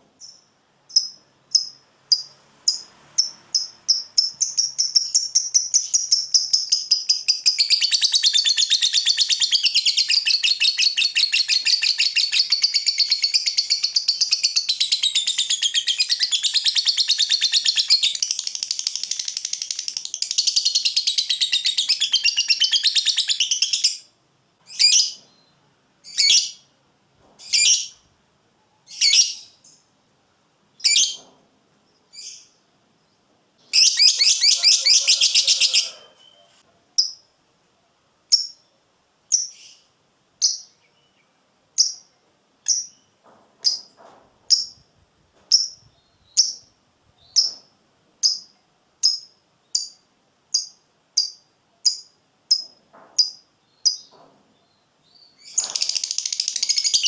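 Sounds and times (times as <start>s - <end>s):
bird chirping: 0.0s - 26.7s, 27.3s - 29.9s, 30.7s - 37.3s, 38.3s - 44.9s, 45.5s - 57.0s
bird chattering trill: 33.8s - 36.4s, 55.4s - 57.0s.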